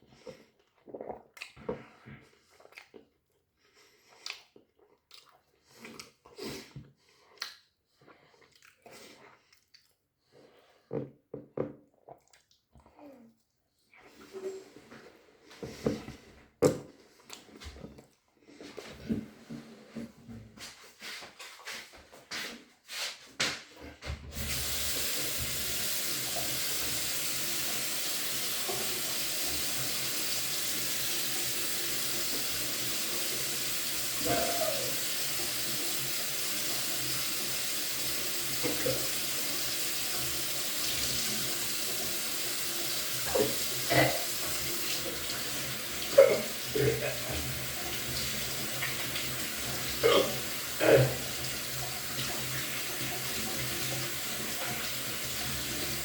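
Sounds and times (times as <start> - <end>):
tap water running into sink: 24.3 - 56.0.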